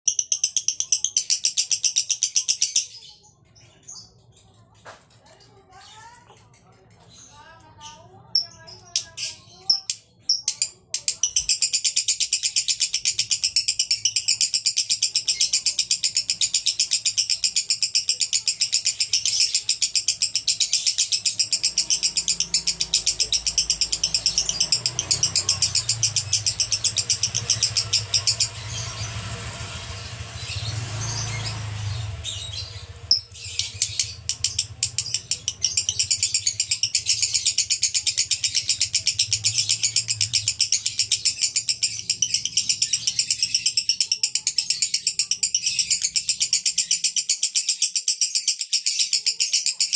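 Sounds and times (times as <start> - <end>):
bird rapid high chirps: 0.1 - 4.7, 5.3 - 49.9.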